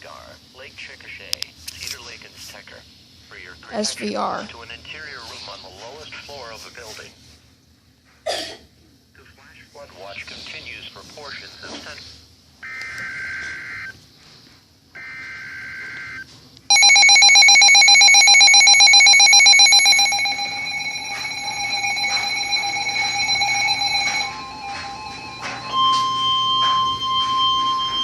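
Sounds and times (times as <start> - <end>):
pulsing warning alarm: 12.6 - 14.0, 15.0 - 28.0
warbling digital data tones: 12.6 - 14.0, 15.0 - 28.0
steady tone: 15.0 - 28.0.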